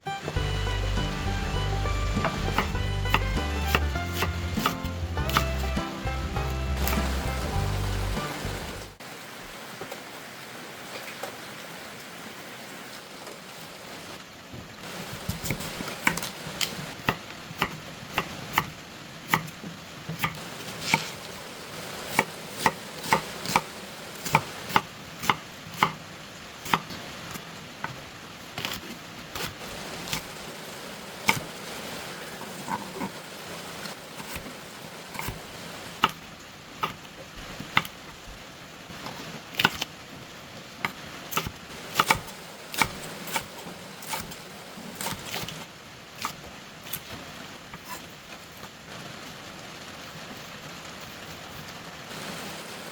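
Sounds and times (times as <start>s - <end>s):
knife chopping on cutting board: 2.1s - 7.5s
steady background hiss: 6.8s - 52.9s.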